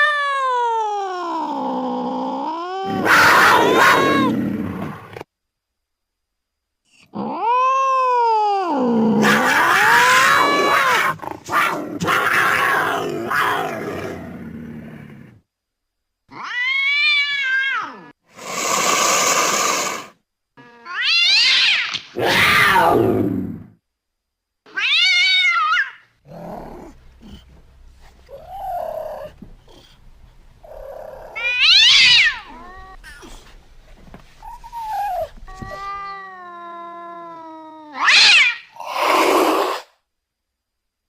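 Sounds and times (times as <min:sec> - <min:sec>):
cat meows and yowls: 0:00.0 - 0:01.8, 0:02.4 - 0:04.4, 0:07.2 - 0:11.2, 0:16.3 - 0:18.2, 0:20.6 - 0:23.0, 0:24.7 - 0:26.0, 0:31.3 - 0:33.1, 0:34.4 - 0:38.8
hiss-like call: 0:18.3 - 0:20.2, 0:38.1 - 0:40.0.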